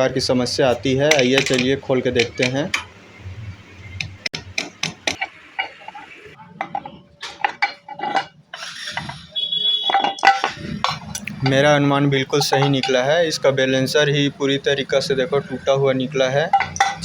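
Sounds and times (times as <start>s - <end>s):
metal tools clinking: 1.0s - 3.0s, 4.6s - 13.3s, 16.4s - 17.0s.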